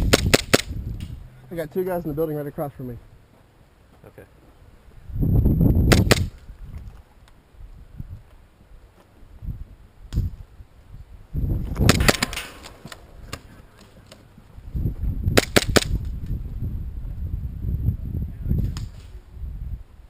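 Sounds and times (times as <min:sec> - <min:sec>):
airsoft pistol shots: 0:00.0 - 0:00.8, 0:05.9 - 0:06.4, 0:11.8 - 0:12.8, 0:15.4 - 0:16.0
low microphone rumble: 0:04.9 - 0:06.9, 0:09.3 - 0:12.2, 0:14.5 - 0:20.0.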